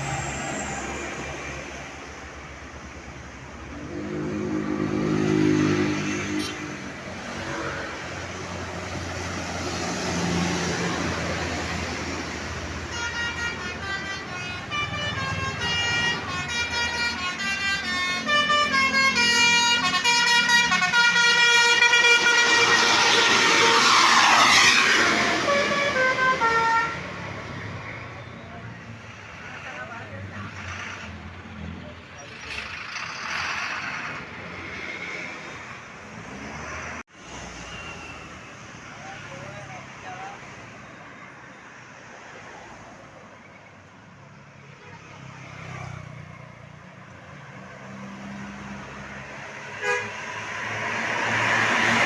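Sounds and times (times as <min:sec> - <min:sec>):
bus air horns playing melody: 0:12.7 - 0:23.9, 0:24.7 - 0:27.1, 0:49.7 - 0:50.4.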